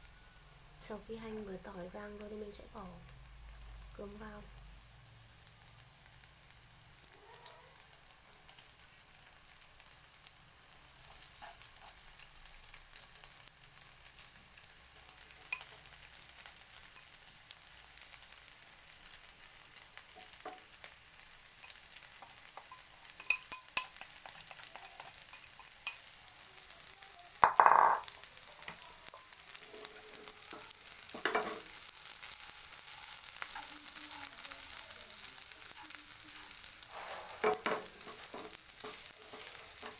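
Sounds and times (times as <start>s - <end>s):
rice sizzling in a hot pan: 0.0s - 39.9s
utensil scraping and clinking on pan: 21.6s - 26.1s, 29.2s - 31.7s, 36.8s - 39.9s.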